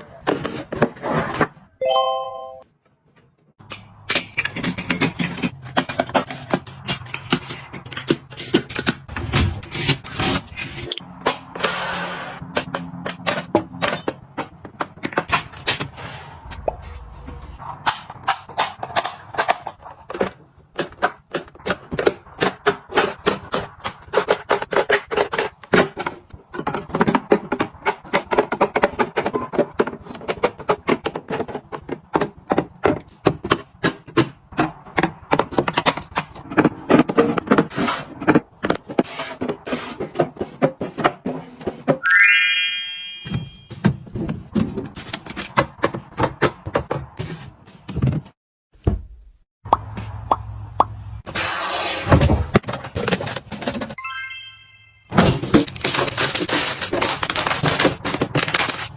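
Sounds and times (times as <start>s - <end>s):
packages rustling: 55.2s - 58.9s.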